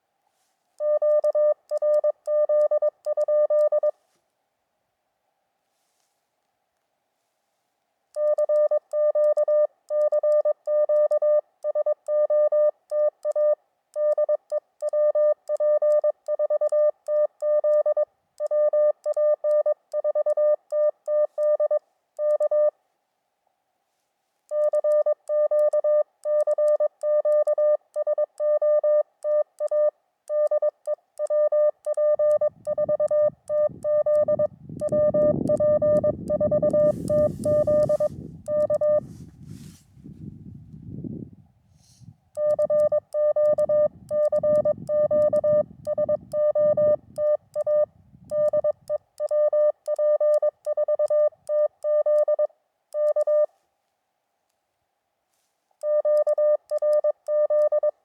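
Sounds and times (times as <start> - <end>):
morse code tone: 28.4 - 39.2, 42.4 - 53.5.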